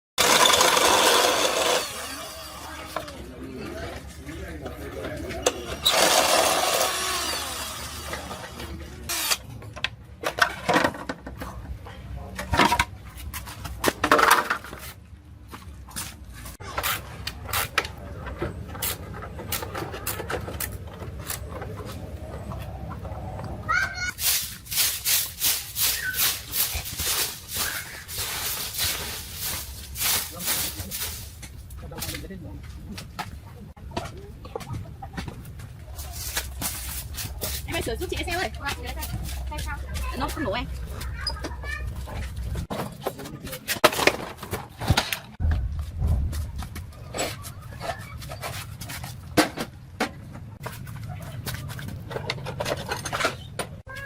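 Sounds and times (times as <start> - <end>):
objects clicking and scraping: 8.0 - 32.3, 46.6 - 54.0.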